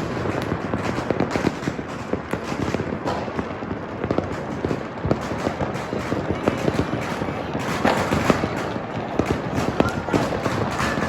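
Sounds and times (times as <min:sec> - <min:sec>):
fireworks crackling and popping: 0:00.0 - 0:11.0
loud firecracker bangs: 0:00.0 - 0:11.0.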